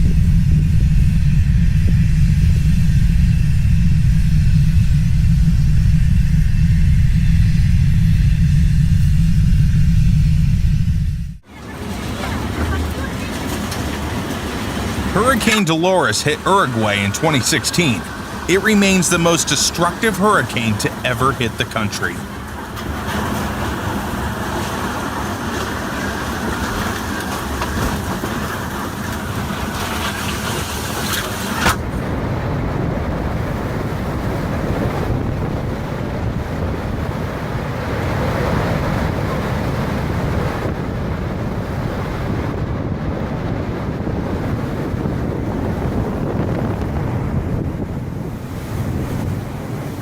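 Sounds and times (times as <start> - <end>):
strong wind buffeting microphone: 31.8 - 50.0.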